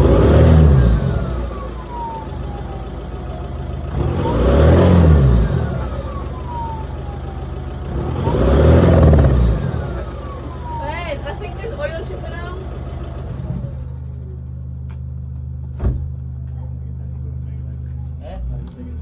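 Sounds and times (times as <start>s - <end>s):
diesel engine revving: 0.0s - 14.9s.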